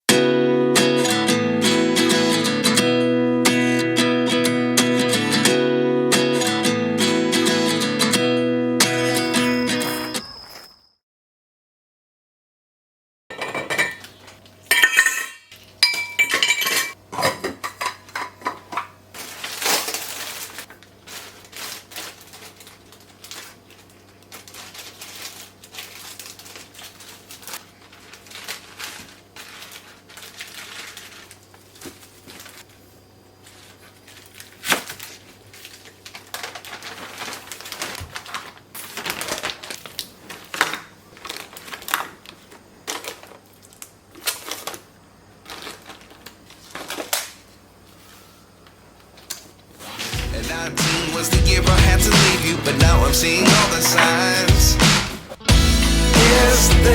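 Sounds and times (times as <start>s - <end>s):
dishes and cutlery clattering: 13.3s - 18.9s.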